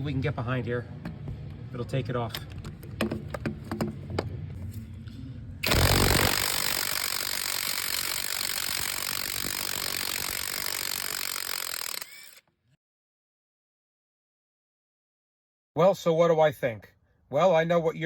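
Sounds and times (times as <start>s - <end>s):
impact wrench hammering: 5.6s - 12.4s.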